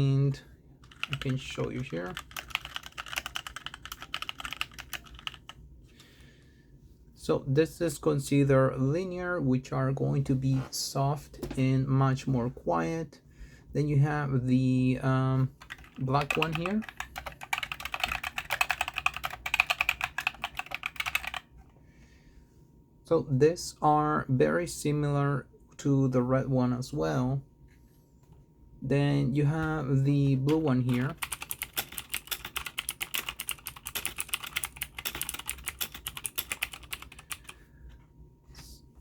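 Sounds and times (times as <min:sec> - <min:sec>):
fast typing on mechanical keyboard: 0:00.8 - 0:05.6, 0:15.6 - 0:21.5, 0:30.5 - 0:37.6.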